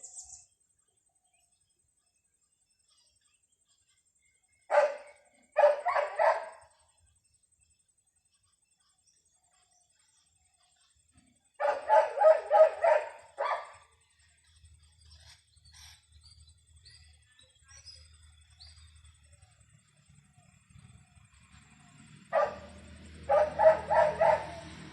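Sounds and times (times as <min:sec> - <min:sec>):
faint high bird chirps: 0:00.0 - 0:21.5
dog barking: 0:04.7 - 0:06.7, 0:11.6 - 0:13.9, 0:22.3 - 0:24.7.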